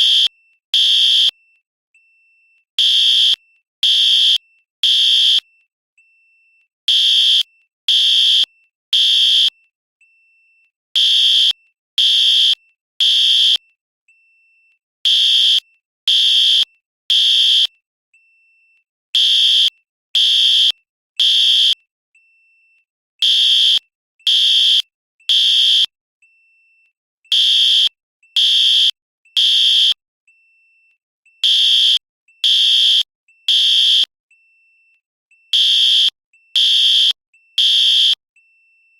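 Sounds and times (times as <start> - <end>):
fire alarm beeping: 0.0 - 1.3, 2.8 - 5.4, 6.9 - 9.5, 11.0 - 13.6, 15.1 - 17.7, 19.2 - 21.8, 23.2 - 25.9, 27.3 - 30.0, 31.4 - 34.1, 35.6 - 38.2.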